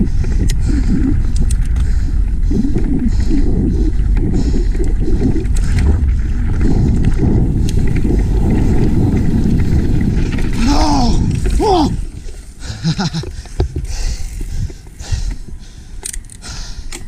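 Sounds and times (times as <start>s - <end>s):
bike rattling: 0.0s - 17.0s
wind buffeting microphone: 0.0s - 17.0s
tyres rumbling on dirt: 5.5s - 15.5s.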